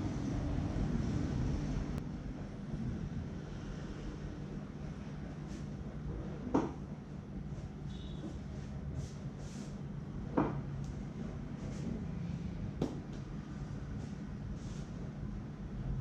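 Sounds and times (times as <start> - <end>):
low background hum: 0.0 - 16.0
soft rubbing swishes: 13.6 - 15.0.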